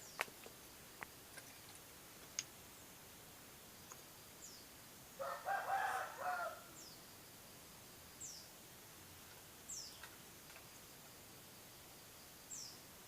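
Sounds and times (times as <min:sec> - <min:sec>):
small bird chirping: 0:00.0 - 0:00.4, 0:03.8 - 0:05.4, 0:08.0 - 0:08.6, 0:09.2 - 0:11.0, 0:11.6 - 0:13.0
rooster crowing: 0:05.2 - 0:06.7.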